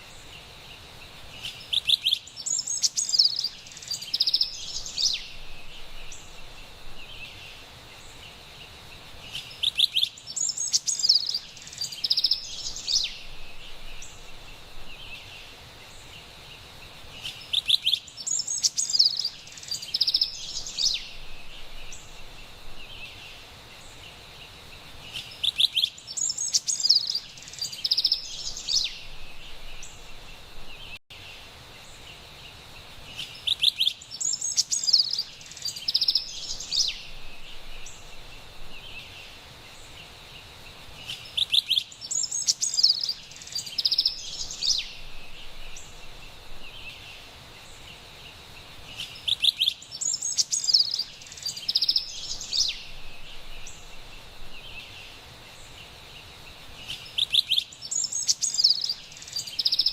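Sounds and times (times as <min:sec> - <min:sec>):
high background hiss: 0:00.0 - 0:59.9
wren singing: 0:01.4 - 0:08.3, 0:09.2 - 0:16.2, 0:17.1 - 0:24.0, 0:25.0 - 0:31.0, 0:33.1 - 0:40.2, 0:41.0 - 0:59.9.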